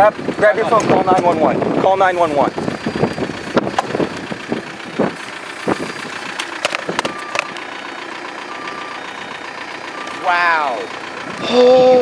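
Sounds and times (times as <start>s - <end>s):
vehicle engine idling: 0.0s - 12.0s
gear clicking and knocking: 3.0s - 7.7s
short beeps: 8.4s - 10.7s.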